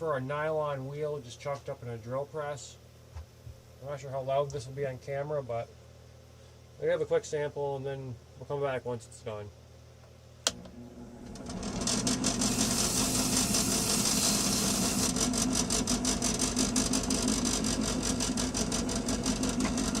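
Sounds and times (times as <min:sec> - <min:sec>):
drill press motor hum: 0:10.4 - 0:20.0
abrasive wheel scrubbing metal: 0:11.6 - 0:16.4.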